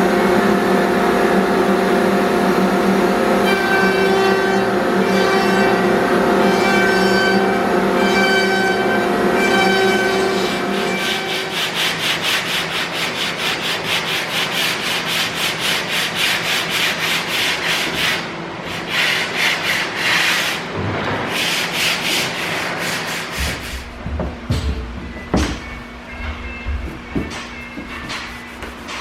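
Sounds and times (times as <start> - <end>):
hand sanding wood: 10.2 - 20.6, 21.3 - 24.6, 26.8 - 29.0
knocks: 23.3 - 29.0.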